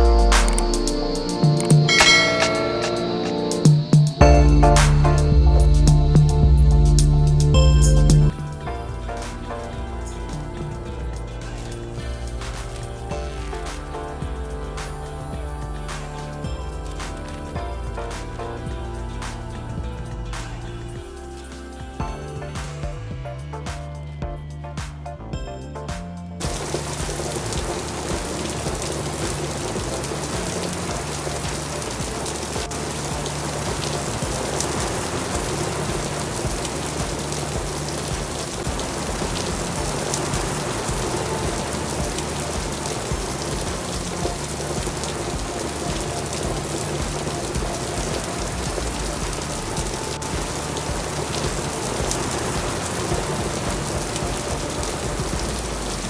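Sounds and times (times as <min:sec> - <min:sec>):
steady rain falling: 0:00.0 - 0:22.0, 0:26.4 - 0:56.0
low held music notes: 0:00.0 - 0:56.0.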